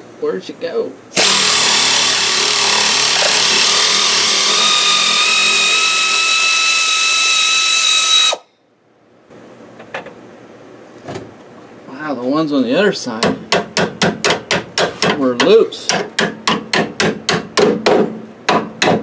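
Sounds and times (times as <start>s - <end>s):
air wrench hissing and whining: 1.1s - 8.5s.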